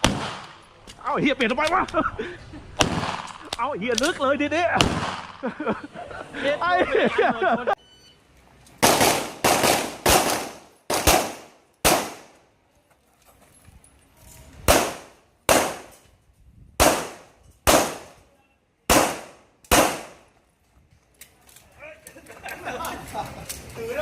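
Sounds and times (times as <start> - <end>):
handgun shots: 8.8 - 12.4, 14.7 - 16.0, 16.8 - 18.1, 18.9 - 20.2.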